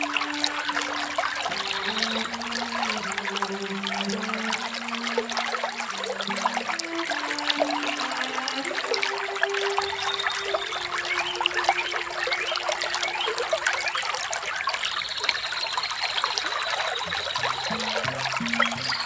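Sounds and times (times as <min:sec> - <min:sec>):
low slow musical notes: 0:00.0 - 0:13.6, 0:17.1 - 0:19.0
small waterfall splashing: 0:00.0 - 0:19.0
faint bird chirps: 0:09.9 - 0:19.0.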